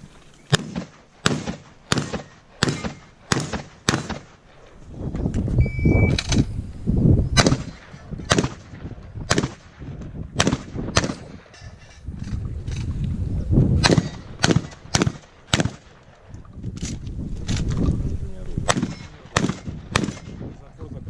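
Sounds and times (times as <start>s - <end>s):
shotgun shots: 0.5s - 4.5s, 7.4s - 11.5s, 13.8s - 16.1s, 18.6s - 20.4s.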